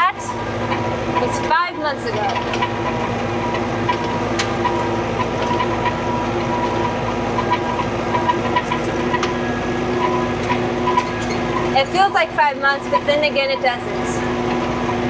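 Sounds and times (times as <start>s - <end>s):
tractor engine running: 0.0s - 15.0s
light rattles and clicks: 0.6s - 9.4s.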